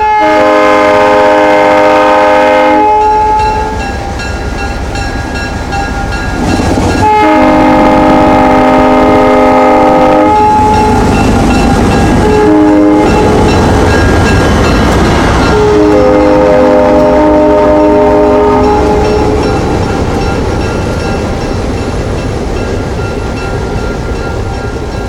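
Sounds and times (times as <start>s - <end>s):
train air horn blasts: 0.0s - 3.9s, 7.0s - 11.1s, 12.1s - 13.5s, 15.5s - 19.4s
train rumbling past: 0.0s - 25.0s.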